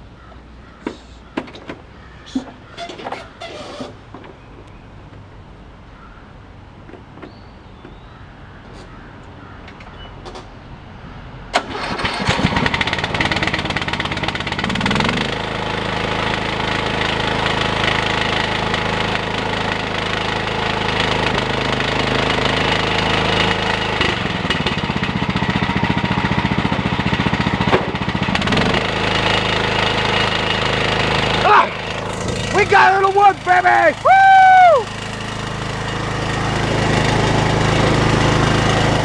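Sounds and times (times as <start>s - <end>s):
engine cranking: 0.8s - 5.3s, 11.5s - 39.0s
lawn tractor engine running: 11.5s - 39.0s.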